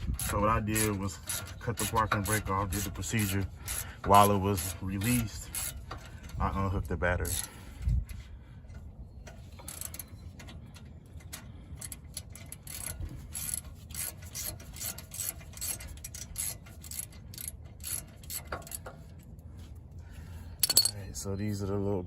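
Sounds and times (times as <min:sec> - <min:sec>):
hand tool metal clicks: 0:20.6 - 0:21.0.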